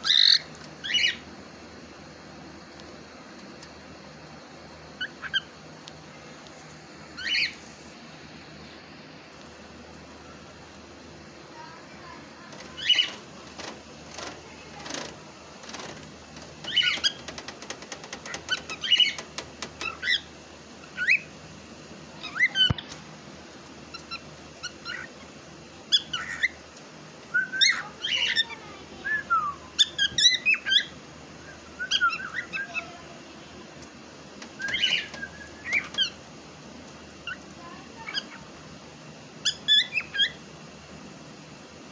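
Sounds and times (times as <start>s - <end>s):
cockatiel chirping and whistling: 7.2s - 7.6s, 27.4s - 28.4s, 31.8s - 32.8s, 34.6s - 36.2s.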